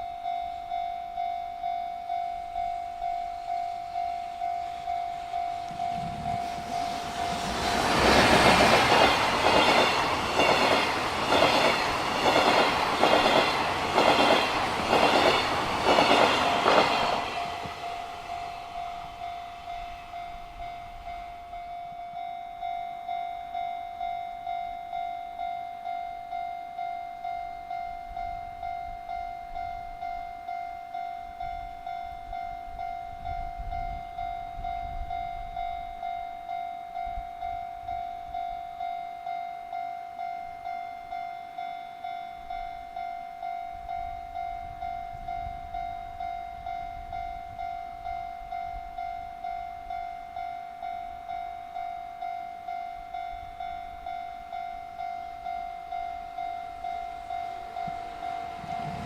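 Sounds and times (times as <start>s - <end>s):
level crossing bell ringing: 0.1s - 7.9s, 46.0s - 59.0s.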